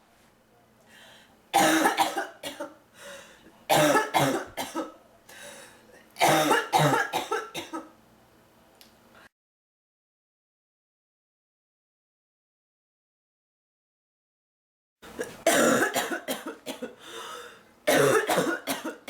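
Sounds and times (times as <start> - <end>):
woman coughing: 1.6 - 2.8, 3.7 - 5.0, 6.2 - 7.9, 15.2 - 17.0, 17.9 - 19.0.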